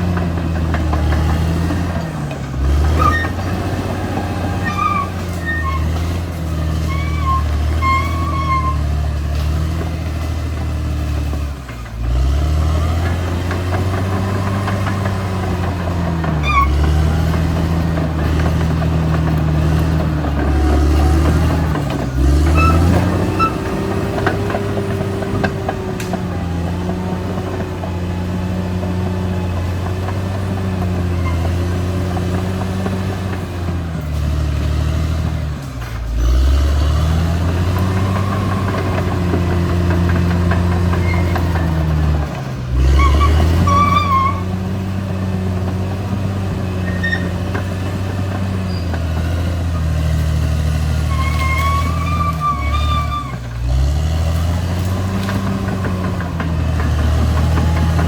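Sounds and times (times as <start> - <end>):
bulldozer diesel engine running hard: 0.0 - 58.0
short high-pitched squeals: 4.4 - 6.1, 6.8 - 9.0, 16.4 - 16.9, 22.5 - 23.7, 51.1 - 53.4.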